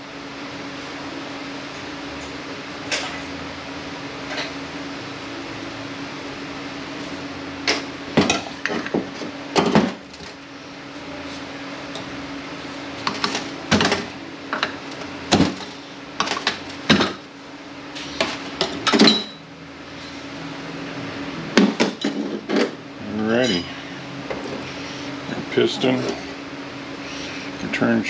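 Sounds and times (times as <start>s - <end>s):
steady hum: 0.0s - 28.0s.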